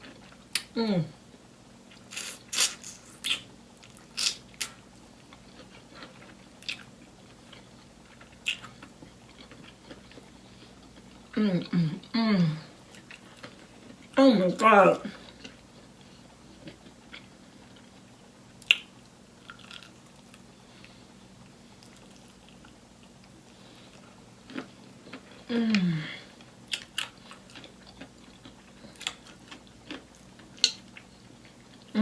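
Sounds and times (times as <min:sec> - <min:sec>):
person chewing fried chicken: 0:01.9 - 0:11.4, 0:12.8 - 0:14.2, 0:15.2 - 0:25.5, 0:26.3 - 0:31.9
wet mouth clicks: 0:02.1 - 0:03.4.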